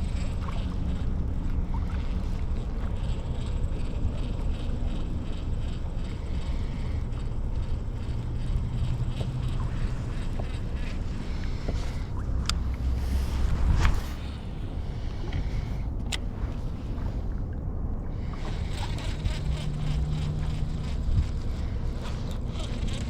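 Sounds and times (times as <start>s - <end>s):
wind buffeting microphone: 7.9s - 23.0s.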